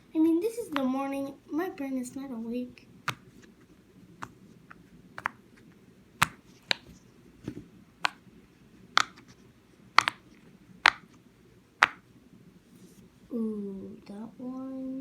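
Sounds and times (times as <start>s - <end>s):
silicone fidget popper popping: 10.8s - 11.0s.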